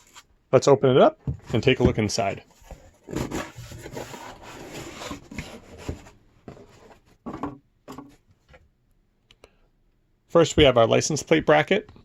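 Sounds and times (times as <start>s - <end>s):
cardboard box scraping and rustling: 2.5s - 7.1s.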